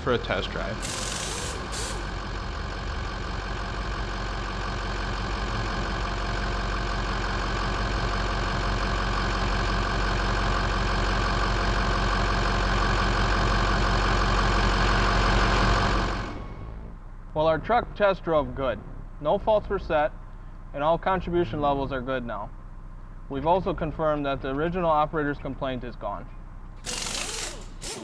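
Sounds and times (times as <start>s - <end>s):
diesel engine running: 0.1s - 17.1s, 26.8s - 28.0s.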